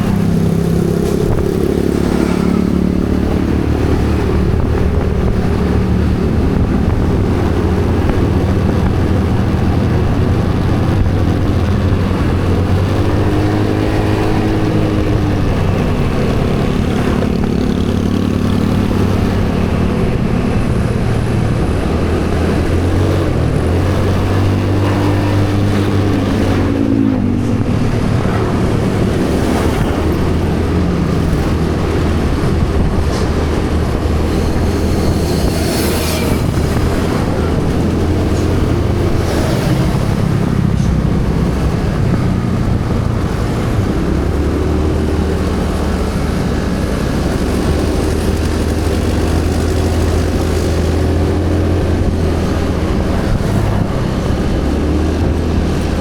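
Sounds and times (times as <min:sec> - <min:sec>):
motorcycle engine rumble: 0:00.0 - 0:56.0
road noise: 0:00.0 - 0:56.0.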